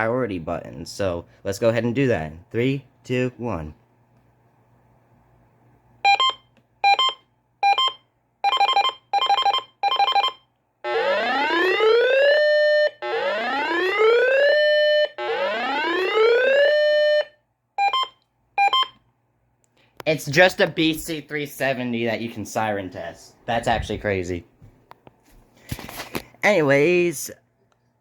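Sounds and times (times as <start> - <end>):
rising siren wails: 10.8 - 17.3.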